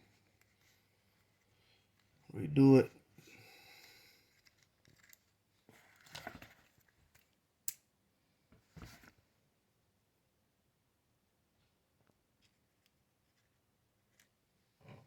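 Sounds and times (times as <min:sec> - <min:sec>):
soft scrapes and rustles: 0:08.6 - 0:09.2.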